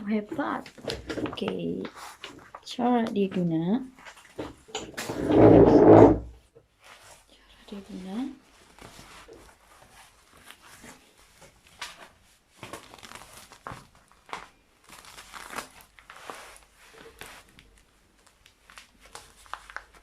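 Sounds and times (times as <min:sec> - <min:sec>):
packaging crinkling: 0:08.6 - 0:20.0.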